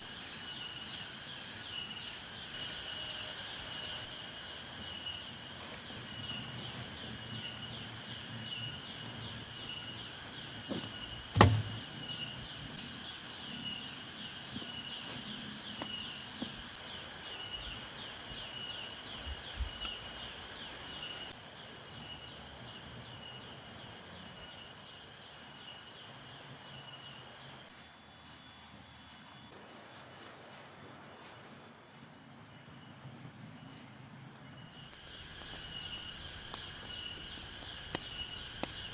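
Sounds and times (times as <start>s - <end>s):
insects chorus pulsing: 0.0s - 27.7s, 31.7s - 38.9s
sharp knock: 10.7s - 12.1s.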